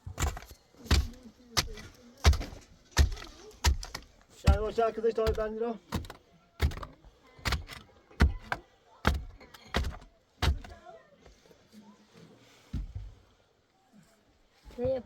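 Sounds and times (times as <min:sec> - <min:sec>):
sharp knocks: 0:00.0 - 0:10.8.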